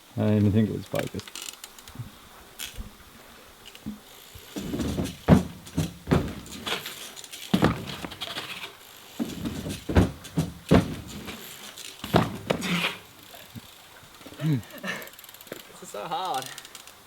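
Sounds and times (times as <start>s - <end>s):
bike knocking on wood: 3.8s - 14.4s
tyres rumbling over plywood: 3.9s - 13.2s.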